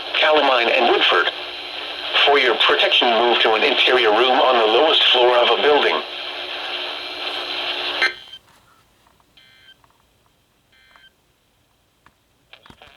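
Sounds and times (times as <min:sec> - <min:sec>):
radio hiss: 0:00.0 - 0:08.4.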